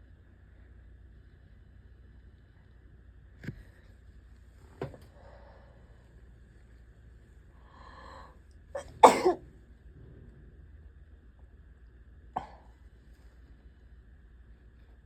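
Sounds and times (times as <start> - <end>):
person sneezing: 8.8 - 9.4, 12.4 - 12.7.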